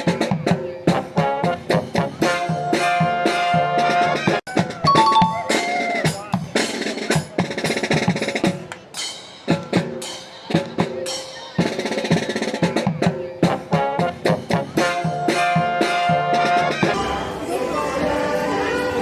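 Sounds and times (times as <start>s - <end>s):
drums keeping a steady beat: 6.1s - 16.2s.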